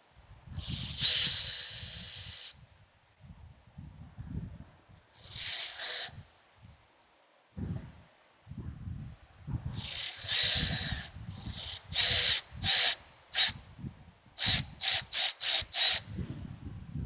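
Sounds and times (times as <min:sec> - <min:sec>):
sharp hissing bursts: 0:00.5 - 0:02.6, 0:05.1 - 0:06.2, 0:09.7 - 0:13.6, 0:14.4 - 0:16.2.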